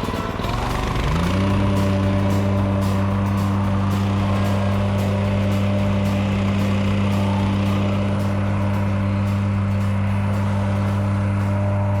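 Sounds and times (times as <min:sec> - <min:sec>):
small gas engine droning: 0:00.0 - 0:12.0.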